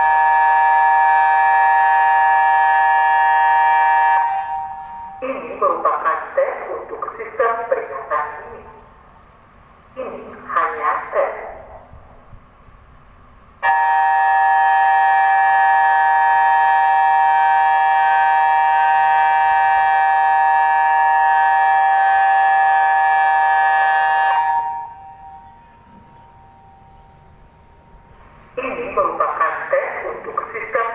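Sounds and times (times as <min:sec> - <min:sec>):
warning siren steady tone: 0:00.0 - 0:06.0, 0:13.6 - 0:30.4.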